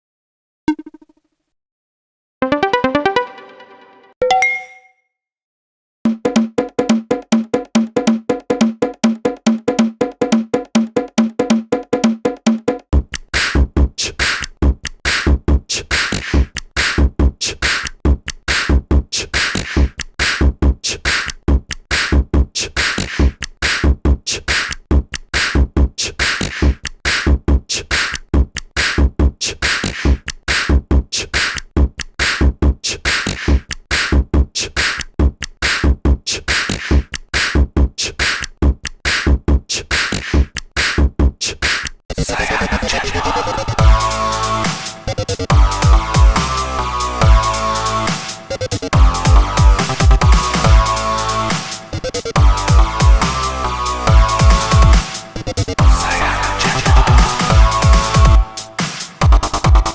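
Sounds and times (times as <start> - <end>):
electronic beat with bass kicks: 43.8 - 59.9.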